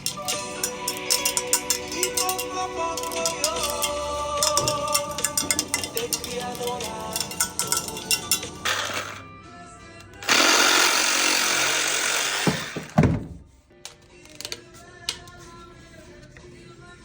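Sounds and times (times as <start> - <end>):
background music: 0.0 - 17.0
plumbing power tool running: 3.0 - 9.2, 10.2 - 13.2.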